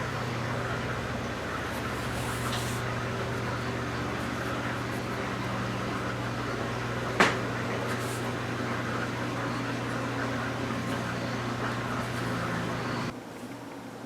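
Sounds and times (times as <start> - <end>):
fan humming: 0.0 - 13.2.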